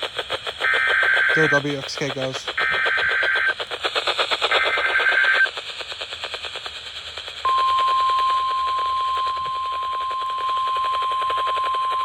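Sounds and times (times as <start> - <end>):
crackly radio reception noise: 0.0 - 12.0
steady warning alarm tone: 0.6 - 3.6, 4.5 - 5.5, 7.4 - 12.0.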